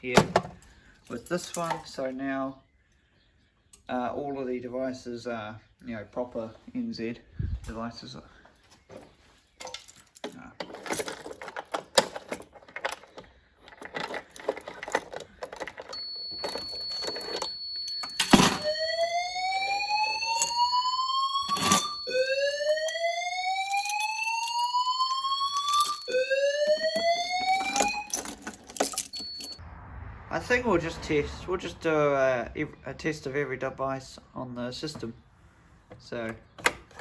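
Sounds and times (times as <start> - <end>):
fire alarm rising whoop: 16.0 - 28.2.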